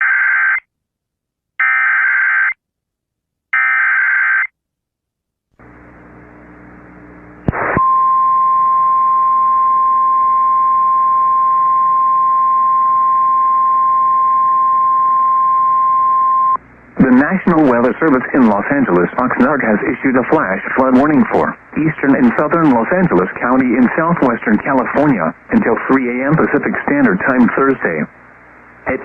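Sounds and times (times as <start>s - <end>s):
radio static with hum: 5.6s - 8.0s, 16.2s - 29.0s.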